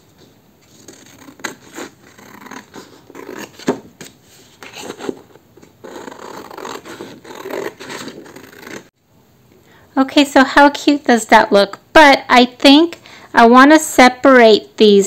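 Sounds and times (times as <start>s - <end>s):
paper rustling and scraping: 0.6s - 8.9s.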